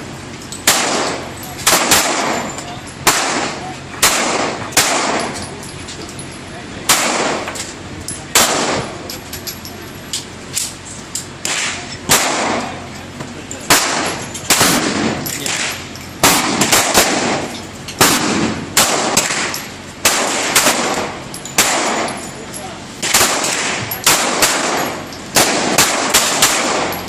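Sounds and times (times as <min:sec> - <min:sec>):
gunshots with echo: 0:00.7 - 0:05.4, 0:08.4 - 0:09.0, 0:11.4 - 0:12.7, 0:13.7 - 0:22.2, 0:23.0 - 0:27.0.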